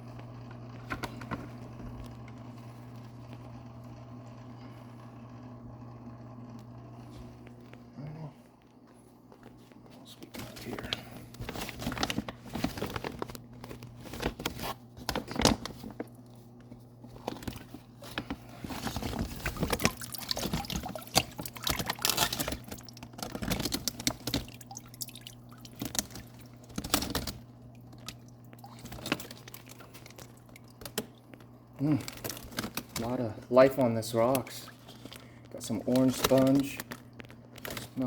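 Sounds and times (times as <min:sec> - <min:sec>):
water sloshing and dripping: 0:15.2 - 0:38.0.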